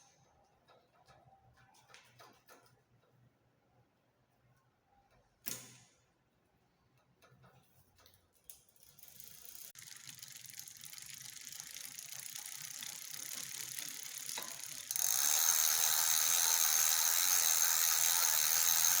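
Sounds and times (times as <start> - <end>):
bike chain clicking whir: 8.6 - 19.0.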